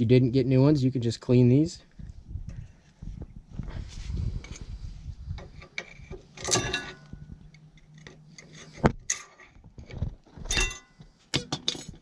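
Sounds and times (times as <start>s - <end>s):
metal clips clinking: 5.7s - 8.5s, 10.5s - 12.0s.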